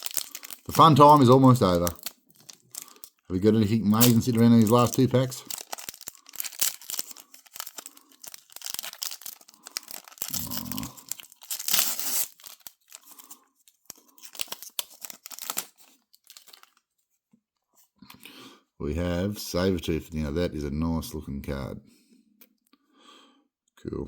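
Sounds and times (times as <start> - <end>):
wrapper tearing and crinkling: 0.0 - 16.8.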